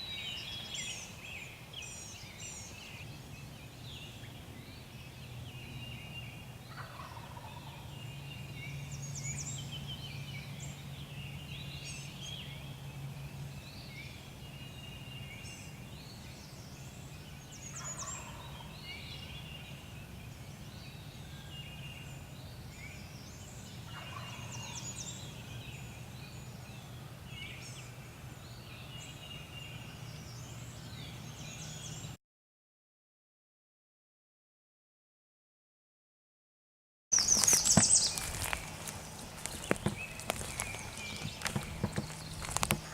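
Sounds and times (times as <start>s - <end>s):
songbirds chirping: 0.0s - 32.2s, 37.1s - 42.9s
turkey gobbling: 6.7s - 7.8s, 23.9s - 24.8s.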